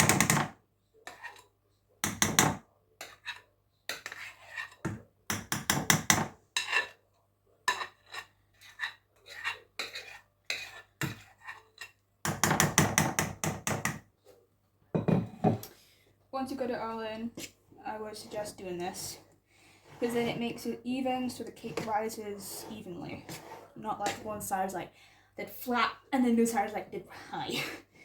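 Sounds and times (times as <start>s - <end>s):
utensil scraping batter from bowl: 1.0s - 1.5s, 3.0s - 4.8s, 6.6s - 7.0s, 7.6s - 12.0s, 17.4s - 20.7s, 21.3s - 24.3s.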